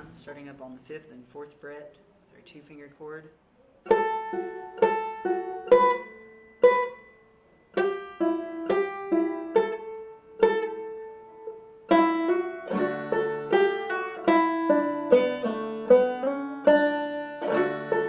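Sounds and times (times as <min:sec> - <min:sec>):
banjo plucked slowly: 0:03.8 - 0:18.0.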